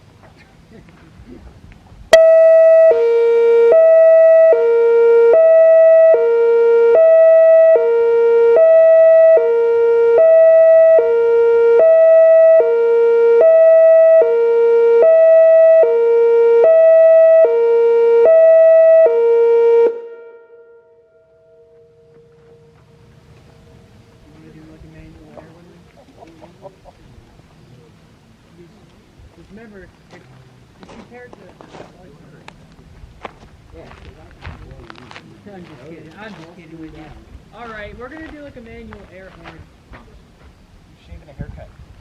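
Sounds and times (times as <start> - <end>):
hi-lo warning siren: 2.1 - 25.8.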